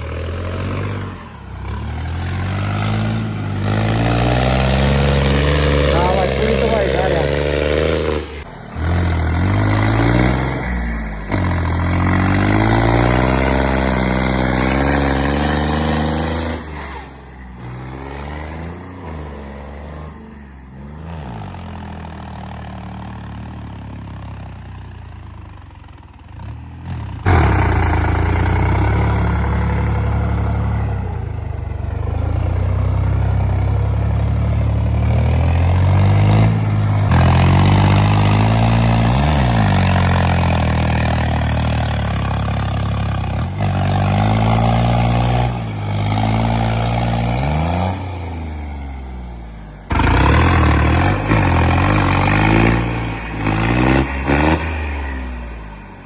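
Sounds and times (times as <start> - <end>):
tractor diesel engine labouring: 0.0 - 56.0.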